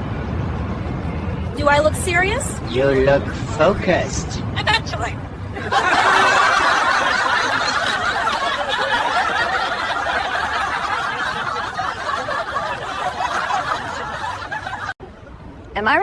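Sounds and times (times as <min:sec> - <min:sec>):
people laughing: 0:05.5 - 0:15.0.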